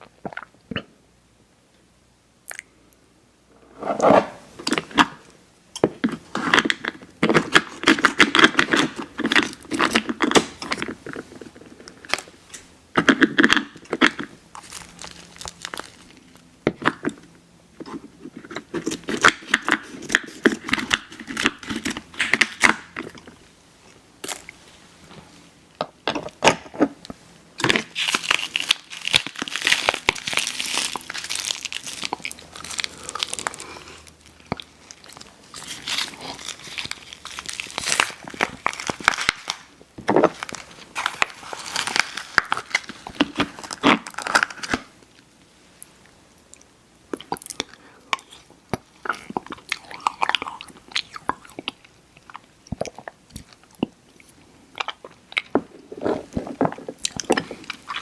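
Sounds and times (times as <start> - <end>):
candy wrapper crinkling: 6.0 - 12.3, 12.9 - 17.2, 17.9 - 23.4, 27.6 - 45.0
chewing candy: 27.7 - 39.7, 46.4 - 58.0.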